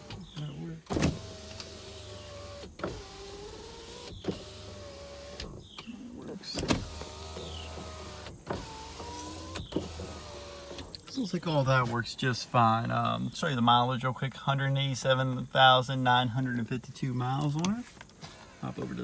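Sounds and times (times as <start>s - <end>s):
power window motor whine: 0.0s - 5.9s, 6.6s - 11.1s.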